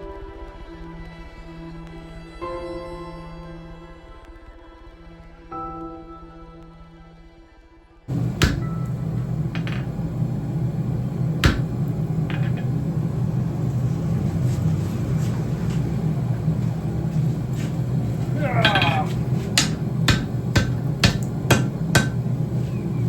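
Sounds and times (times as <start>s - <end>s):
forge humming: 8.1s - 23.0s.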